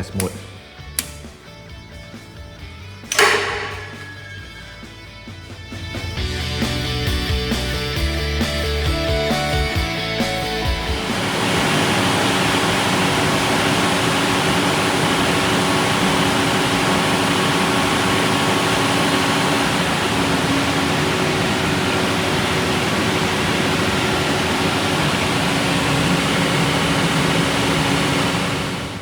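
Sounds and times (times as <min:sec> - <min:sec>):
generator engine running: 0:03.0 - 0:29.0.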